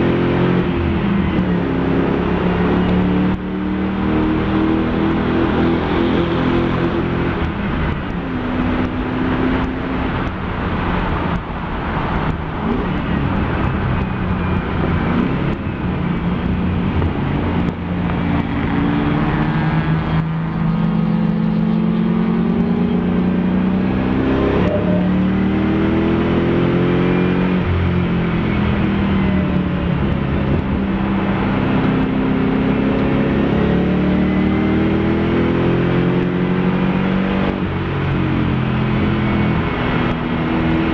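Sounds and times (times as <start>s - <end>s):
race car engine revving: 17.0s - 27.9s, 30.1s - 40.9s.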